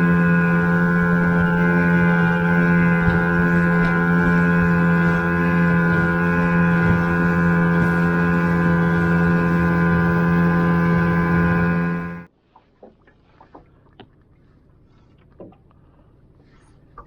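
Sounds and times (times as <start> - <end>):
outboard motor droning: 0.0 - 12.3.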